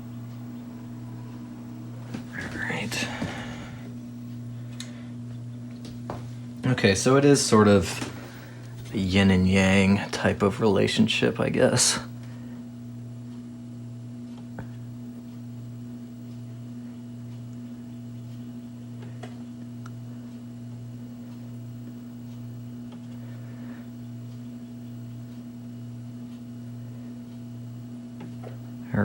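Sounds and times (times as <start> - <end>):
television electrical hum: 0.0 - 29.0.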